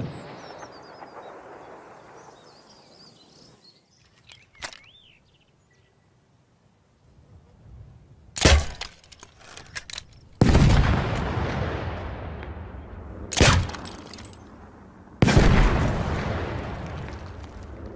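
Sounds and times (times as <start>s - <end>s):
loud explosion: 15.2s - 17.4s.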